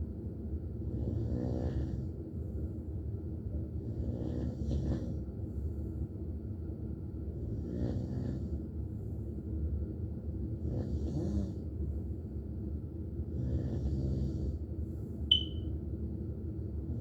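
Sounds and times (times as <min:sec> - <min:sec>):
high-pitched chirp: 0:15.3 - 0:15.7.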